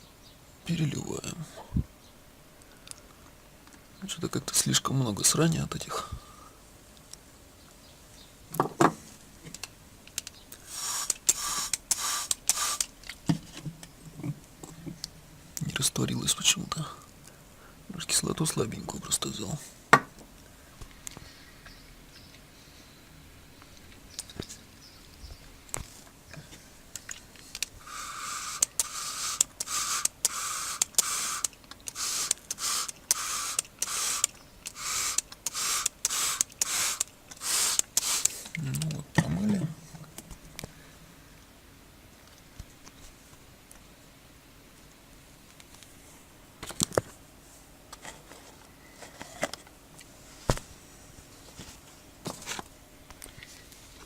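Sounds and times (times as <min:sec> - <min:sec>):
short hissing rustles: 0:09.0 - 0:13.7, 0:25.8 - 0:38.6
small clicks: 0:09.5 - 0:13.2, 0:26.3 - 0:39.0
knocks: 0:19.9 - 0:20.1.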